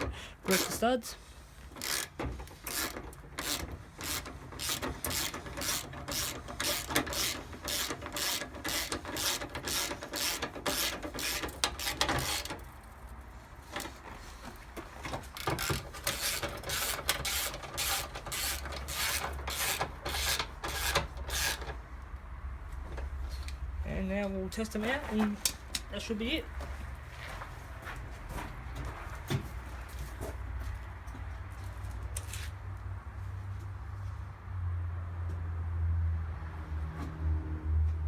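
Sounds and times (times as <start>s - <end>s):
ratchet spanner clicking: 1.7s - 12.8s, 15.3s - 21.7s.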